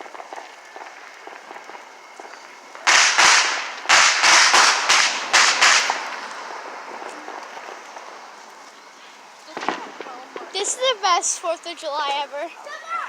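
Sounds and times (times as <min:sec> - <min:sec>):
fireworks loud bangs: 0:00.0 - 0:08.4, 0:09.5 - 0:11.0
fireworks crackling: 0:00.0 - 0:13.0.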